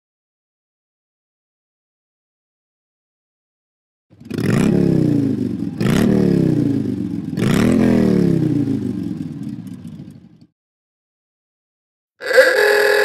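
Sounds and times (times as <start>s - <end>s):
motorcycle engine revving: 4.1s - 10.5s.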